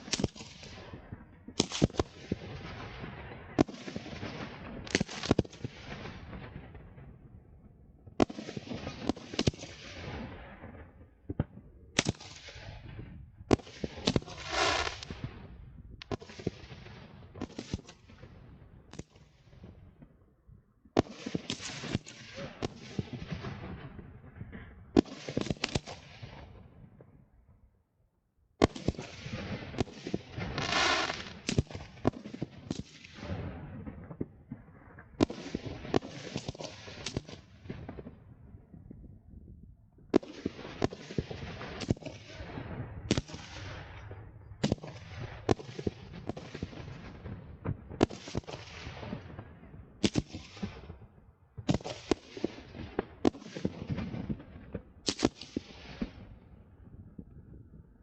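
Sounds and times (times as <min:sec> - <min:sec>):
fireworks bursting: 0:00.0 - 0:06.8, 0:08.2 - 0:18.0, 0:28.6 - 0:34.6, 0:40.2 - 0:50.9.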